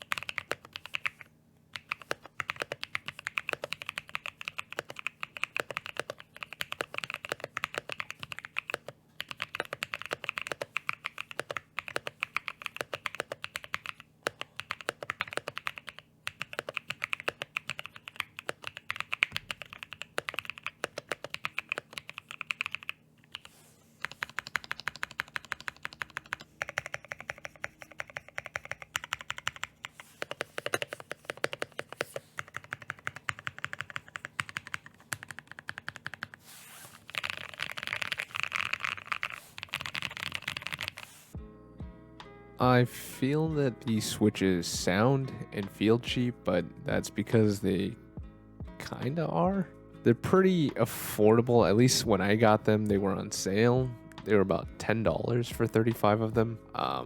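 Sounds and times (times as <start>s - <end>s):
mechanical keyboard typing: 0.0s - 36.4s, 37.0s - 41.2s.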